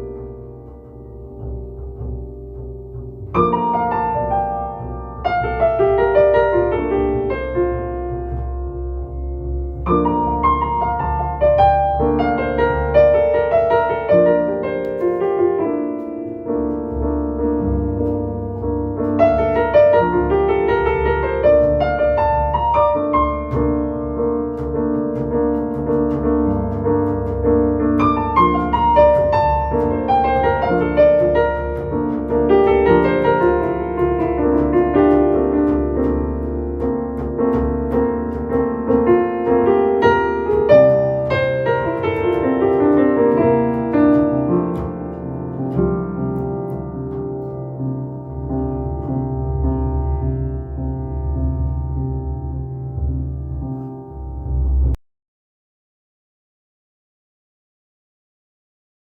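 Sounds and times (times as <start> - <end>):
double bass line: 0.0 - 55.0
jazz piano: 0.0 - 55.0.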